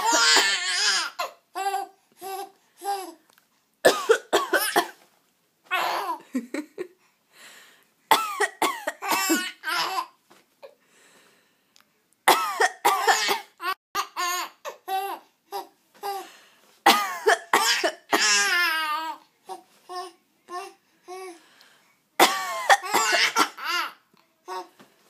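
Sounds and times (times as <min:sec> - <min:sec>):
woman fake coughing: 0:03.9 - 0:04.9.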